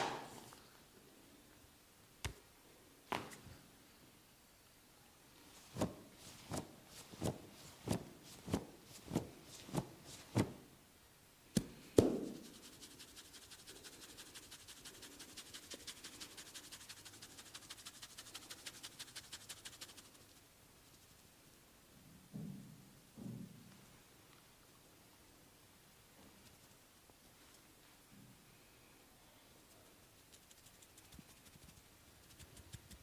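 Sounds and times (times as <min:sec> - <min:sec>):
rapid light high ticks: 0:29.8 - 0:33.0.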